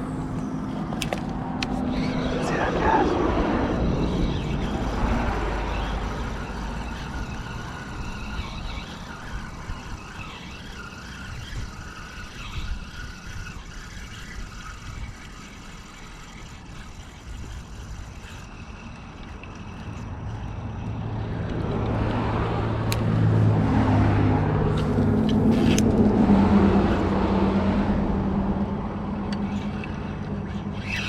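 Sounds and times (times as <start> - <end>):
vehicle passing with low rumble: 0.0 - 9.2, 19.9 - 31.0
wind noise: 0.0 - 15.5
traffic noise: 0.0 - 31.0.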